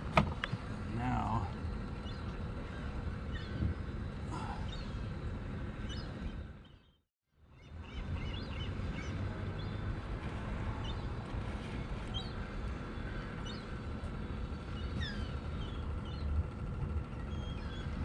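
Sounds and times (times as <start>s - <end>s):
steady low rumble: 0.0s - 7.0s, 7.6s - 18.0s
small birds chirping: 0.4s - 10.0s, 10.7s - 18.0s.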